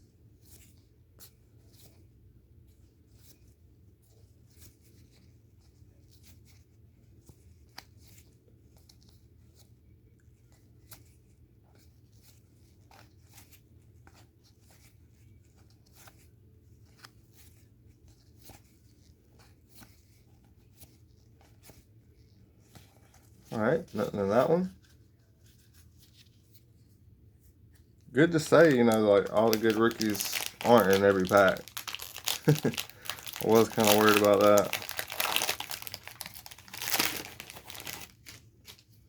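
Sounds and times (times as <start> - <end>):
trading cards being flipped: 28.4 - 39.0.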